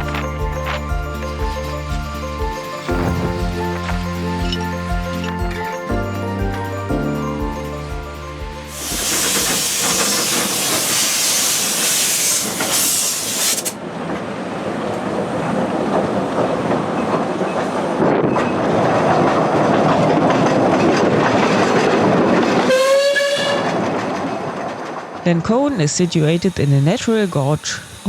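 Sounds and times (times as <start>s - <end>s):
train wheels rattling: 8.0s - 14.4s, 15.0s - 28.0s
steam hissing: 8.7s - 13.9s, 25.4s - 28.0s.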